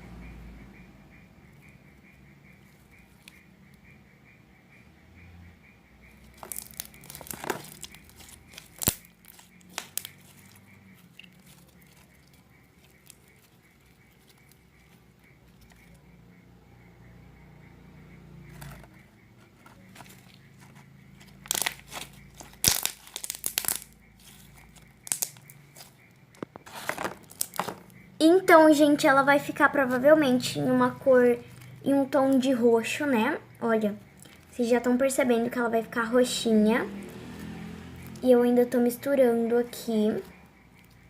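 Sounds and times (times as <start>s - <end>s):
slime crackling and popping: 6.3s - 14.5s, 21.2s - 27.9s.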